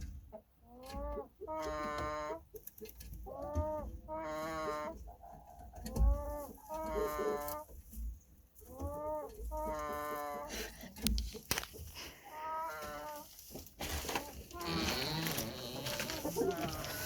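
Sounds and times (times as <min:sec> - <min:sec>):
chicken snoring: 0:09.6 - 0:10.9.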